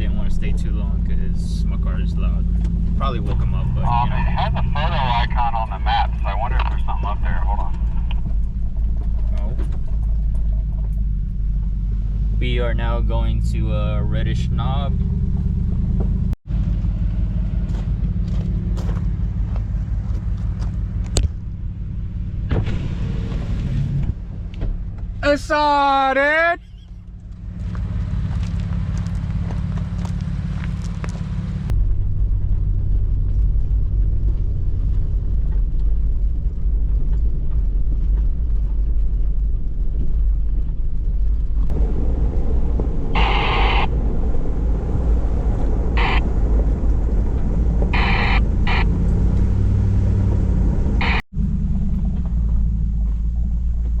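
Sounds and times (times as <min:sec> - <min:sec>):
engine and tyres rumbling: 0:00.0 - 0:54.0
short high-pitched sounds: 0:43.1 - 0:44.0, 0:48.0 - 0:48.9.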